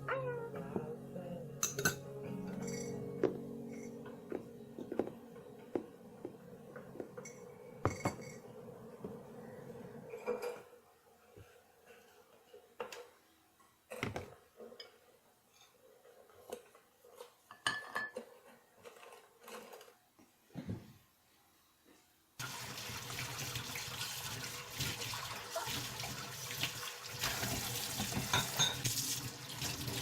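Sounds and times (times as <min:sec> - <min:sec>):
dishes and cutlery clinking: 0:01.6 - 0:05.2, 0:07.0 - 0:08.5, 0:17.2 - 0:19.7, 0:27.4 - 0:28.9.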